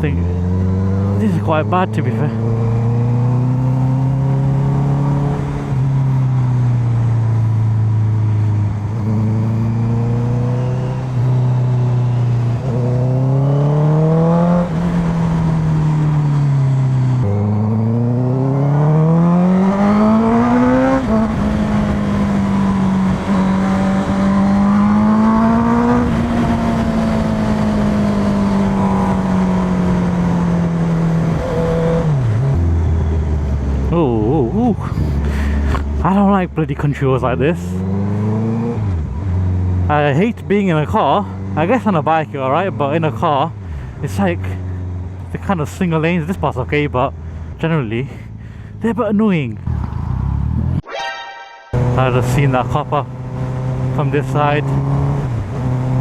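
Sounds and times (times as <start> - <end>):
motorcycle engine revving: 0.0 - 34.0, 37.7 - 40.0, 51.8 - 56.0.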